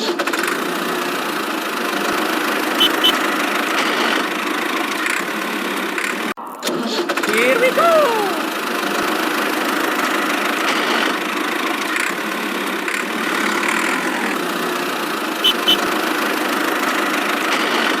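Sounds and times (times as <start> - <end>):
small engine running: 0.0 - 6.2, 8.5 - 18.0
short high tones: 2.8 - 3.2, 15.4 - 15.8.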